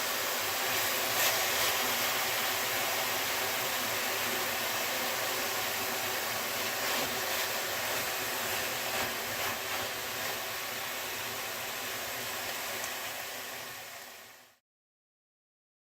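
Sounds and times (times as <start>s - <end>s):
meat sizzling in hot pan: 0.0s - 14.6s.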